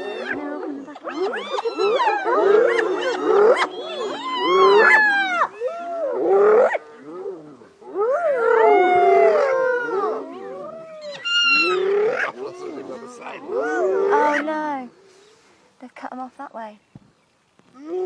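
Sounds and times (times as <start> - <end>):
hyenas and lions fighting calls: 0.0 - 7.4, 8.0 - 14.8.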